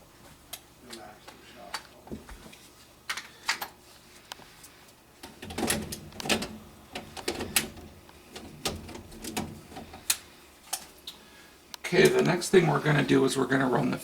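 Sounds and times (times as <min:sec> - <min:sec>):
sharp clicks and knocks: 0:05.2 - 0:10.9.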